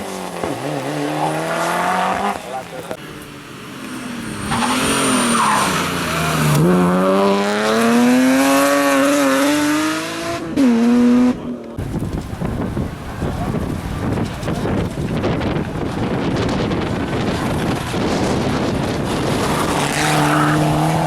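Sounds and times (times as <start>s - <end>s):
rally car engine accelerating: 0.0s - 11.8s, 14.1s - 21.0s
wind buffeting microphone: 11.8s - 21.0s.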